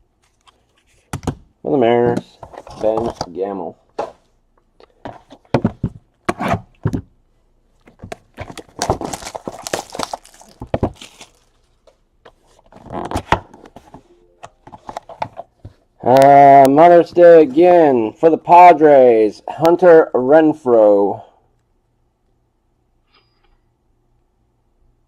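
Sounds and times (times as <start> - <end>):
cards rustling and sliding: 2.0 - 3.4, 7.9 - 11.6.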